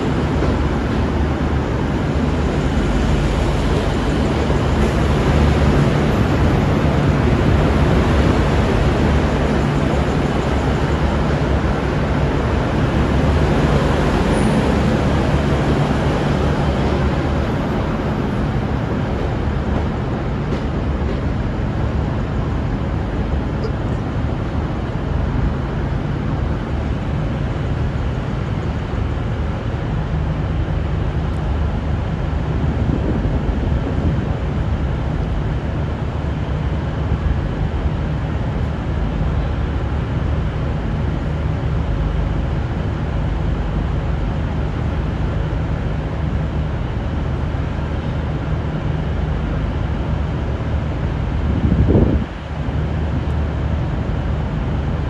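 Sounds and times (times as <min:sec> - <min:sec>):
diesel train engines running: 0:00.0 - 0:55.0.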